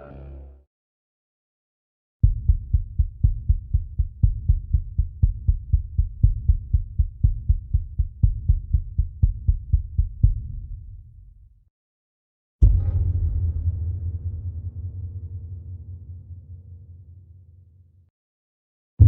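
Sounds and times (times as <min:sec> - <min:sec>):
heartbeat thumps: 0:02.2 - 0:10.6.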